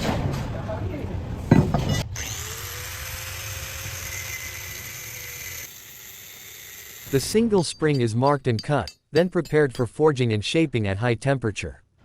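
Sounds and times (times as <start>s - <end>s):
power tool whining: 1.9s - 7.2s.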